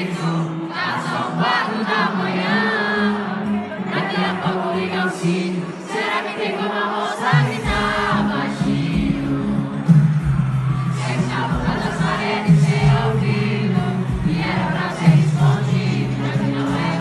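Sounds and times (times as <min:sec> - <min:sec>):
crowd singing along: 0:00.0 - 0:17.0
live pop concert music: 0:00.0 - 0:17.0
bass: 0:07.7 - 0:17.0.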